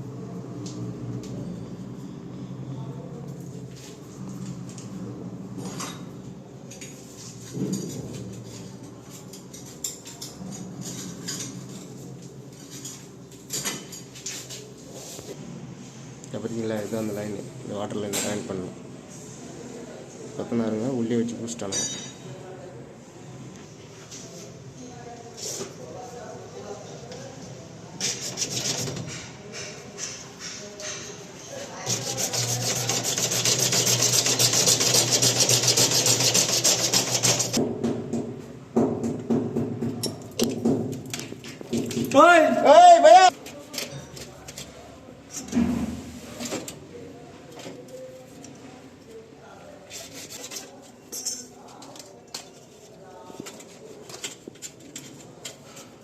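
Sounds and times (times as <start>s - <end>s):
tool rasping against wall: 28.0s - 29.7s, 31.8s - 37.6s.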